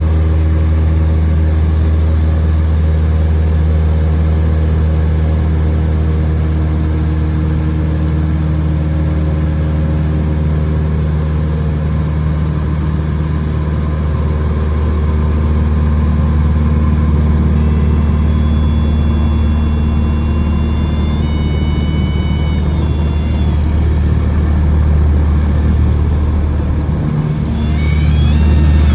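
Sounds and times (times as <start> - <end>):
propeller plane engine drone: 0.0 - 28.9
faint high steady tones: 16.6 - 28.9.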